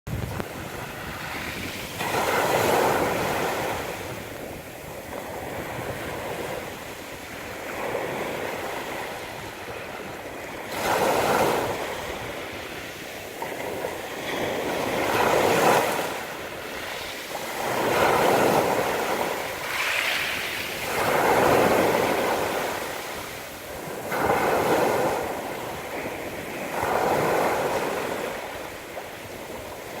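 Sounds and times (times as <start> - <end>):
sea waves washing onto beach: 0.1 - 30.0.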